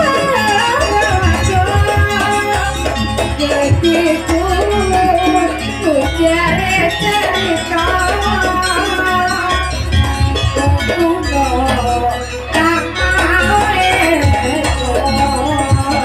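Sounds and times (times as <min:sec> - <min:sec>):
wavering melody: 0:00.0 - 0:16.0
low drum beat: 0:09.8 - 0:11.0.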